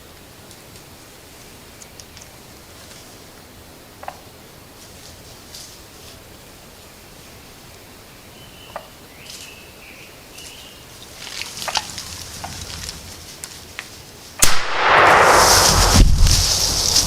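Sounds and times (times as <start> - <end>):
loud shotgun blast: 14.4 - 17.0.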